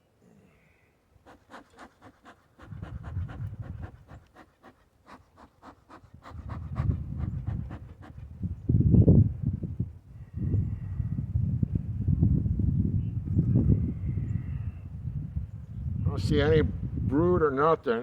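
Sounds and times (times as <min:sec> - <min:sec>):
wind rumble on microphone: 0:02.6 - 0:04.4, 0:06.0 - 0:18.0.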